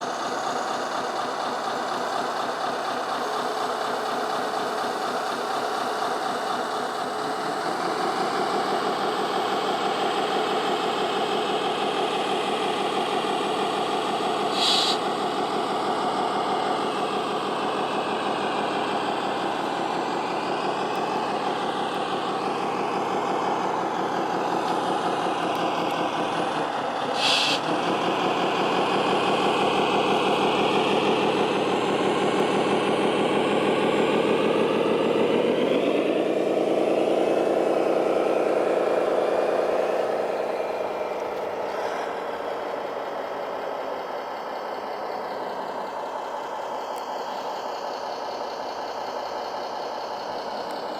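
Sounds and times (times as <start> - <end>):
model machine engine hum: 0.2 - 50.9
short hisses: 14.5 - 15.0, 27.2 - 27.6.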